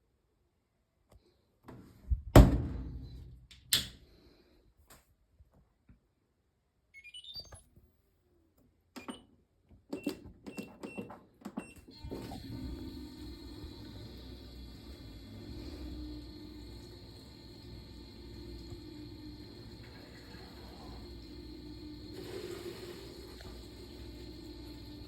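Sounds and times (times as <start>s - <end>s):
button-press beeps with clicks: 7.0s - 7.7s, 9.0s - 9.3s
washing machine rushing: 11.9s - 25.0s.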